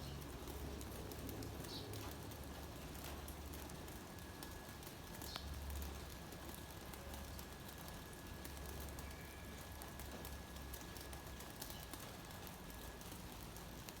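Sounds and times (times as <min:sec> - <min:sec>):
rain patter: 0:00.0 - 0:14.0.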